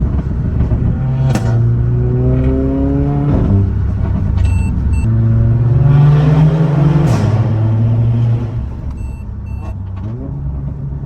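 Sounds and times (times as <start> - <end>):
sharp exhaust crack: 0.0 - 9.8
car engine accelerating: 0.0 - 11.0
high electronic beeps: 4.4 - 5.1, 8.9 - 9.7.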